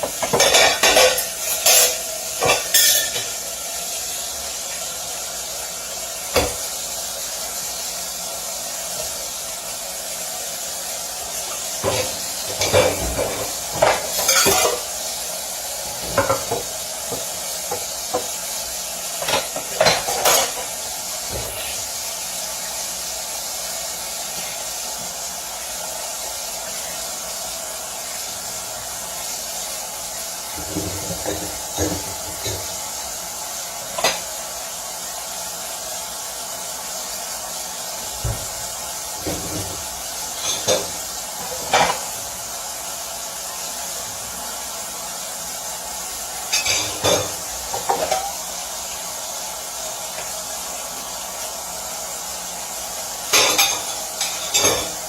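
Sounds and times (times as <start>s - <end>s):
pots and pans clinking: 0.0s - 3.5s, 6.3s - 6.8s, 11.1s - 22.0s, 30.5s - 33.0s, 33.8s - 34.4s, 38.0s - 42.5s, 46.4s - 48.5s, 53.2s - 55.0s
steady sizzling hiss: 0.0s - 55.0s.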